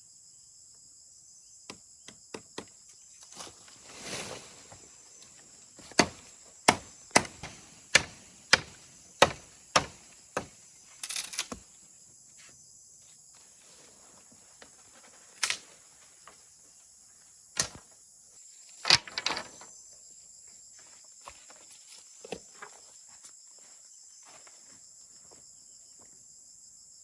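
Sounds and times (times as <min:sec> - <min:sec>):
insect drone: 0:00.0 - 0:27.0
blade chopping wood: 0:05.8 - 0:11.6.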